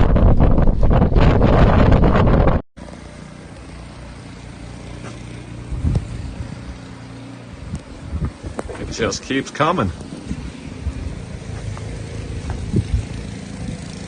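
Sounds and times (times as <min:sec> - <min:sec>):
wind buffeting microphone: 0:00.0 - 0:02.6, 0:05.7 - 0:06.8, 0:07.5 - 0:09.2, 0:09.8 - 0:14.0
vehicle engine humming: 0:02.8 - 0:14.0.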